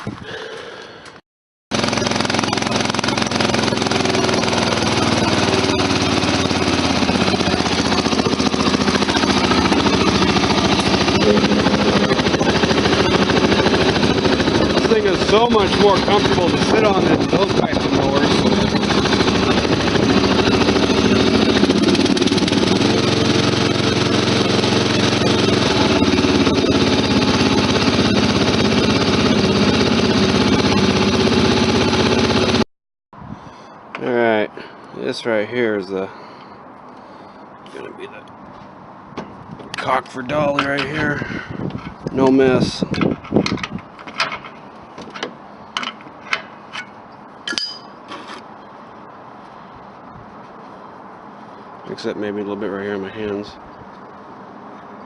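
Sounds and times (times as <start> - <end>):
lawn mower engine running: 1.7 - 32.6.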